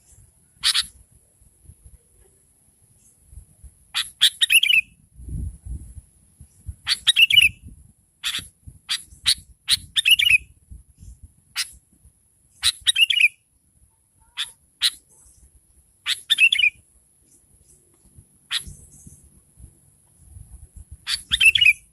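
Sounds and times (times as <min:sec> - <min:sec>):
bird chirping and calling: 0:00.1 - 0:01.0, 0:03.9 - 0:04.9, 0:06.6 - 0:11.8, 0:12.5 - 0:13.4, 0:14.2 - 0:17.9, 0:18.5 - 0:19.3, 0:21.0 - 0:21.9.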